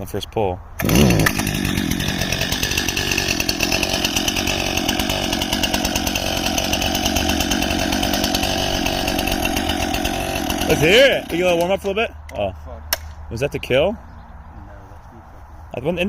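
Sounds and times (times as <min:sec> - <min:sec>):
chainsaw engine running: 0:00.8 - 0:11.9.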